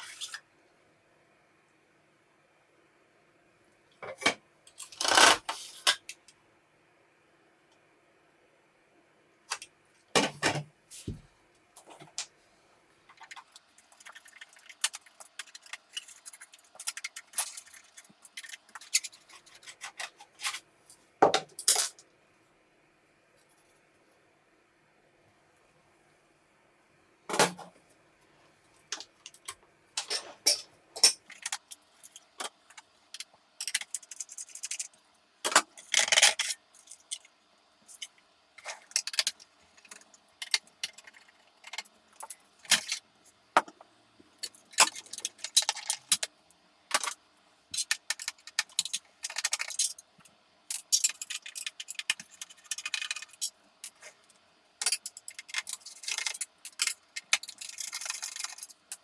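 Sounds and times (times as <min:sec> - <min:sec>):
faint steady hum: 0:00.0 - 0:59.0
metal parts clicking and clinking: 0:13.2 - 0:20.6, 0:28.9 - 0:37.3, 0:44.4 - 0:46.3, 0:46.9 - 0:50.1, 0:50.7 - 0:54.0, 0:54.8 - 0:59.0.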